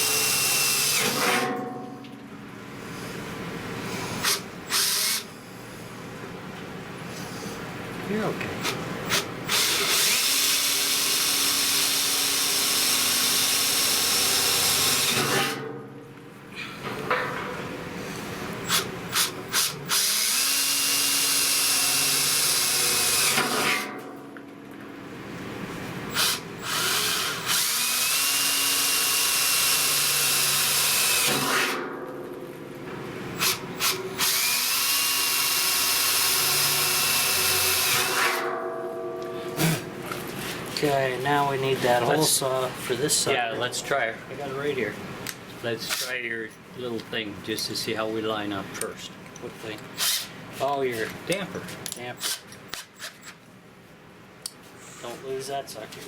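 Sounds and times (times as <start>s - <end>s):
electric drill drilling steel: 0.0s - 1.3s, 4.2s - 5.3s, 9.1s - 15.6s, 18.7s - 23.8s, 26.1s - 31.7s, 33.4s - 38.4s.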